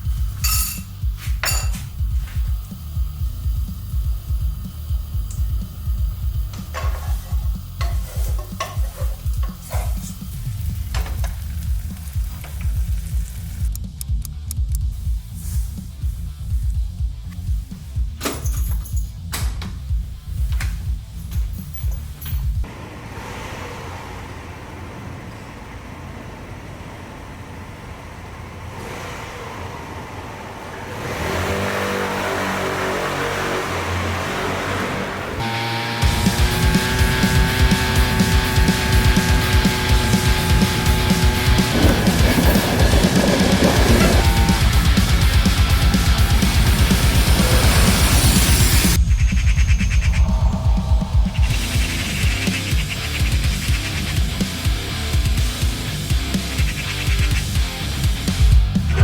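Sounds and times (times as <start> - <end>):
low throbbing bass pulse: 0.0 - 18.2, 35.5 - 59.0
vehicle engine running: 0.0 - 59.0.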